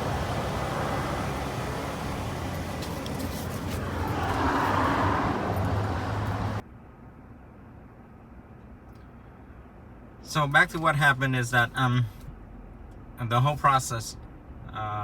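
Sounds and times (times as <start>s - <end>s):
motor vehicle hum: 0.0s - 10.9s.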